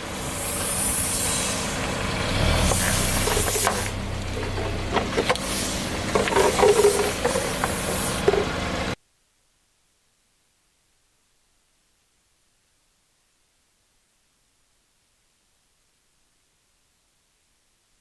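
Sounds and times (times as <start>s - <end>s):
car running: 0.0s - 9.0s
tire rolling slowly: 0.0s - 9.0s
objects crackling under tire: 1.8s - 9.0s.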